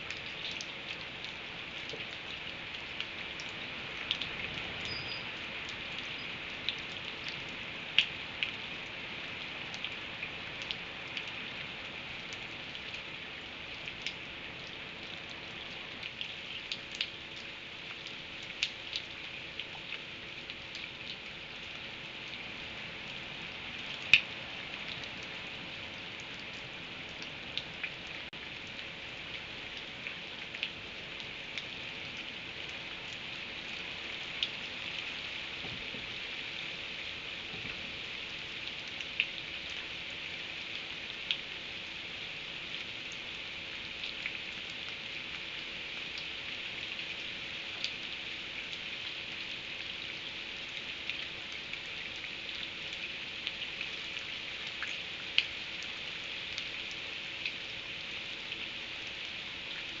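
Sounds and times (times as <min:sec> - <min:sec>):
raindrops ticking sharply: 0:00.0 - 0:07.4
steady rain falling: 0:00.0 - 1:00.0.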